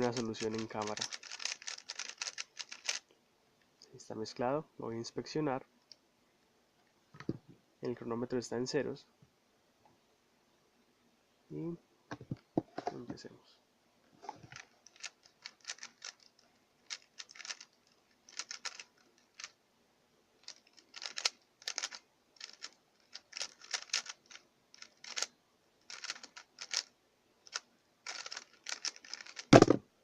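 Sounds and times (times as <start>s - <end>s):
plastic puzzle cube clicking: 0.0s - 3.0s, 14.5s - 19.6s, 20.4s - 26.9s, 27.5s - 29.8s.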